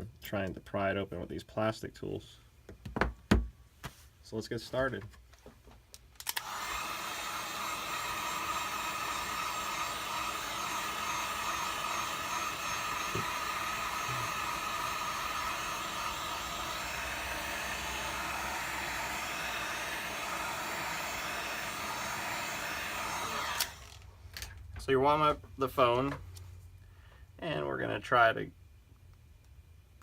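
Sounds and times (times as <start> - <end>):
hot-air blower running: 6.4 - 24.1.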